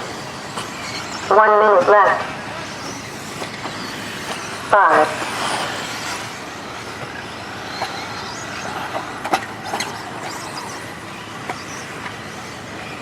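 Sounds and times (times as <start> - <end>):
rc car motors hissing: 0.0 - 13.0.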